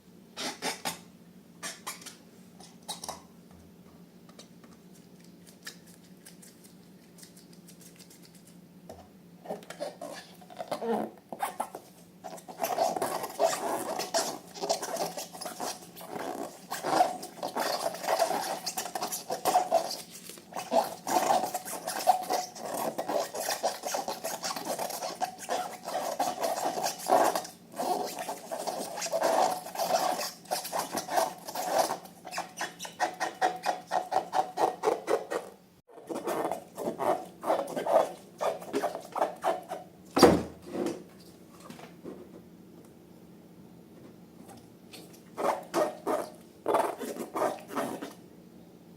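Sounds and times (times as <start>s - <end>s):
slime squelching: 4.8s - 8.6s, 9.5s - 39.5s.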